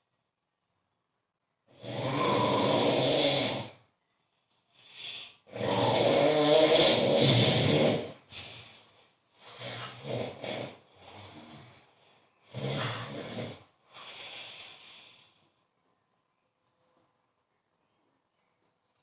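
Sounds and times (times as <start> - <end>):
man snoring loudly: 1.7 - 3.8, 5.4 - 8.3, 9.5 - 11.7, 12.5 - 13.7
soft breath: 4.0 - 5.5, 7.4 - 16.4.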